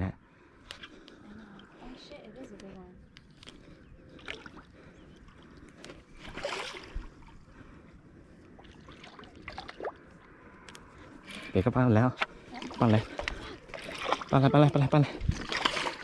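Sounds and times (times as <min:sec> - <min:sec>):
water sloshing at bank: 0:03.3 - 0:07.8, 0:08.4 - 0:10.6, 0:12.2 - 0:16.0
fish splash: 0:06.3 - 0:07.1, 0:08.6 - 0:10.0.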